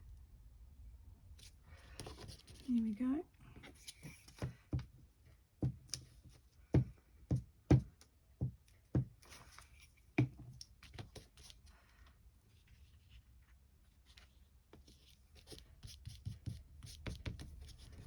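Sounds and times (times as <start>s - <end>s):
hand knocks and taps: 6.7s - 9.2s.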